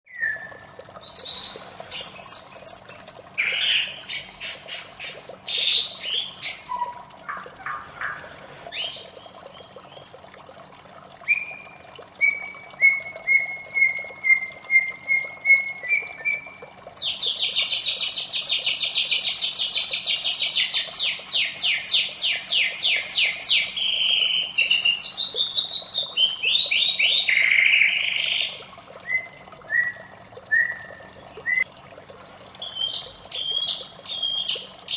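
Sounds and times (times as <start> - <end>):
shama singing whistled phrases: 11.2 - 16.5, 29.0 - 31.7.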